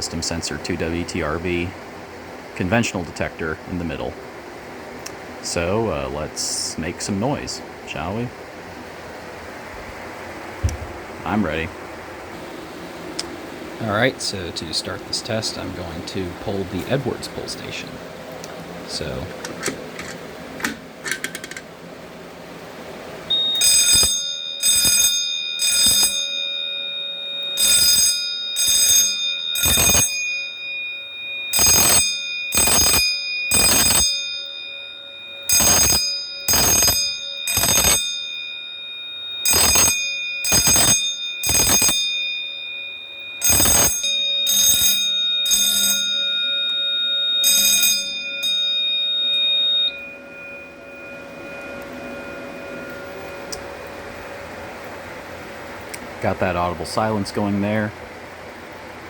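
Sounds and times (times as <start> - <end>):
fire alarm bell ringing: 0.0 - 1.8, 5.2 - 8.1, 12.4 - 18.2, 18.9 - 19.3, 22.5 - 58.0
steady high-pitched tone: 9.0 - 18.3, 18.9 - 19.3, 22.3 - 57.9
fire alarm pull station clicks: 19.4 - 21.7, 23.3 - 30.7, 31.3 - 34.6, 35.4 - 38.5, 39.5 - 42.3, 43.4 - 49.9.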